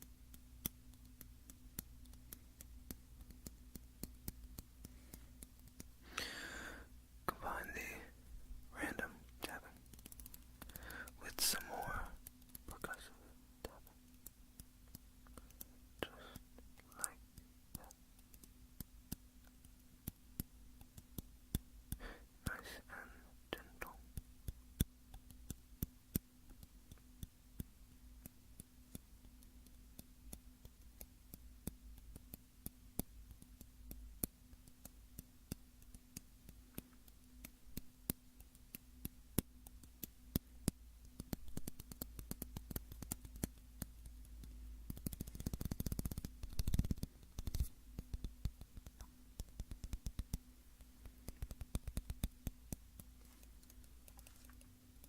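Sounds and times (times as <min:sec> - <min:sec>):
fingertips tapping hard object: 0:24.1 - 0:54.7.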